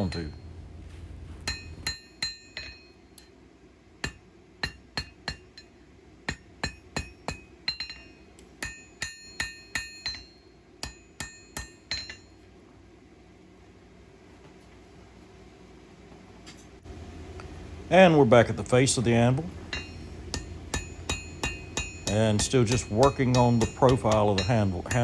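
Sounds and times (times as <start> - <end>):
hammer striking steel on anvil: 0.0 - 0.5, 1.4 - 3.3, 4.0 - 12.4, 19.0 - 25.0.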